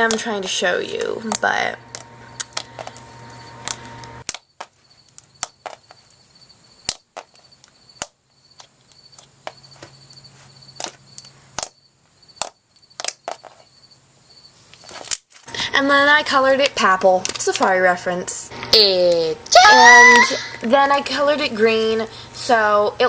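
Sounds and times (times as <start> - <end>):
sharp clicks and pops: 1.0 - 6.0, 6.8 - 9.3, 10.8 - 13.6, 16.6 - 17.8.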